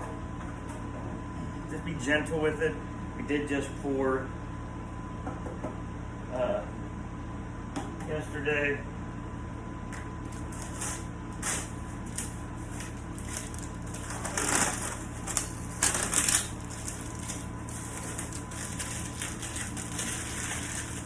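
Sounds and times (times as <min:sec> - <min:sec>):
steady low hum: 0:00.0 - 0:21.0
tape being peeled off: 0:10.4 - 0:21.0.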